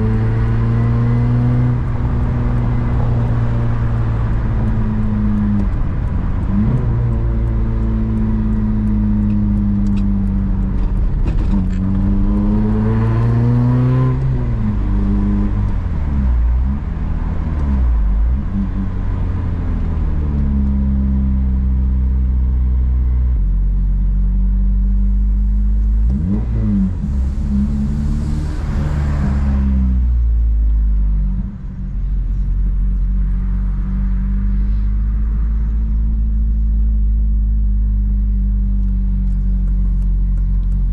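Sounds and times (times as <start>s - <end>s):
car engine revving: 0.0s - 40.9s.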